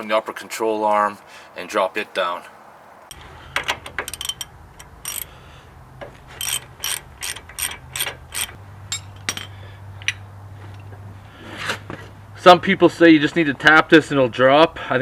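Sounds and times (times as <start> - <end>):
ratchet wrench clicking: 3.6 - 5.3, 6.4 - 8.6.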